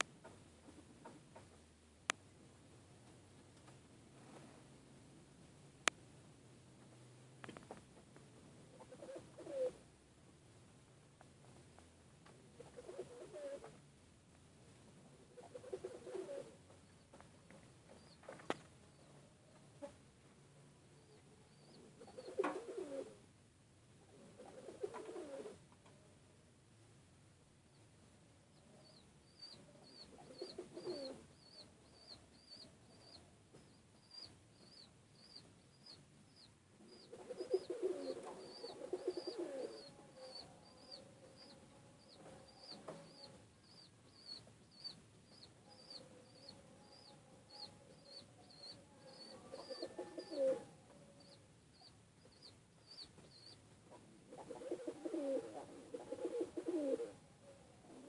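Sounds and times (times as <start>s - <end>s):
pigeons cooing: 8.7s - 9.8s, 12.5s - 13.8s, 15.3s - 16.6s, 21.6s - 23.2s, 24.2s - 25.6s, 29.9s - 31.6s, 36.9s - 45.0s, 45.7s - 51.4s, 53.4s - 57.2s.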